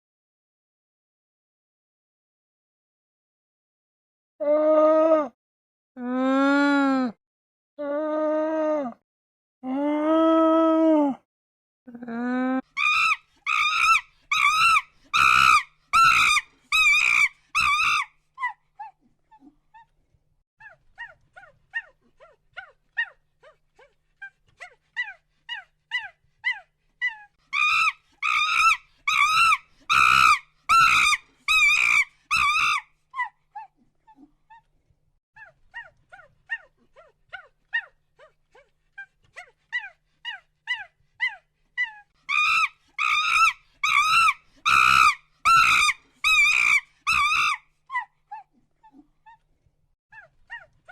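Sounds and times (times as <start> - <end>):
animal high-pitched wavering cries: 12.8 - 19.5, 25.0 - 34.2, 39.8 - 49.4.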